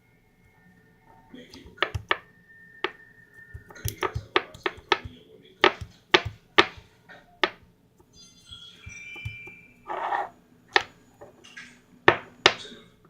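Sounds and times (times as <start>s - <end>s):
brief chiming tone: 8.1s - 9.9s.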